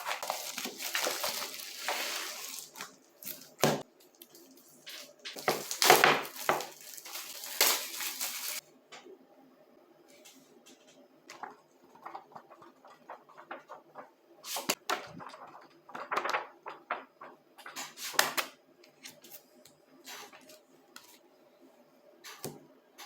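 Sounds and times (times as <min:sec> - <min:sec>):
packaging rustling and crinkling: 0:00.0 - 0:08.6.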